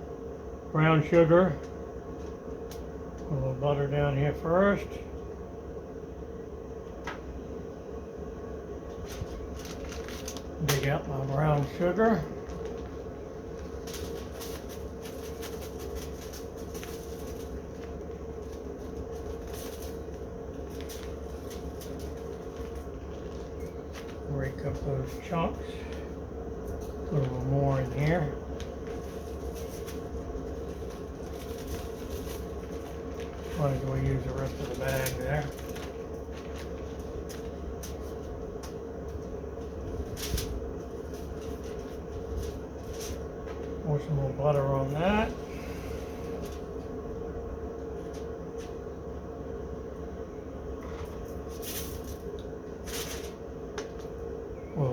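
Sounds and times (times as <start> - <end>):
steady low hum: 0.0 - 54.9
plastic bag rustling: 8.9 - 46.9, 50.8 - 54.3.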